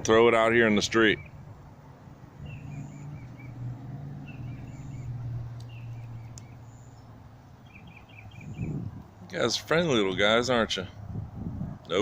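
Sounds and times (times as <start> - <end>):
small bird chirping: 2.4 - 9.0.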